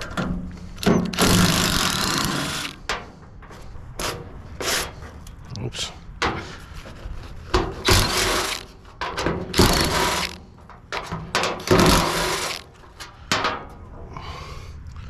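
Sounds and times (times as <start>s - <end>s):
impact gun bursts: 0.8s - 2.8s, 7.9s - 8.7s, 9.5s - 10.4s, 11.5s - 12.7s.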